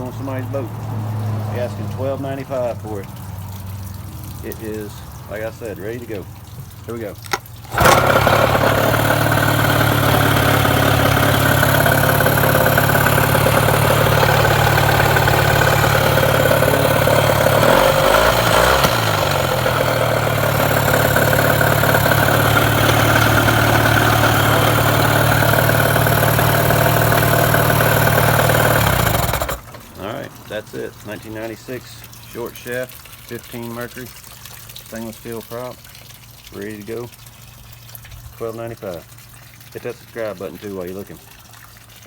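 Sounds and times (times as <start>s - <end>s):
outboard motor running: 7.2s - 30.7s.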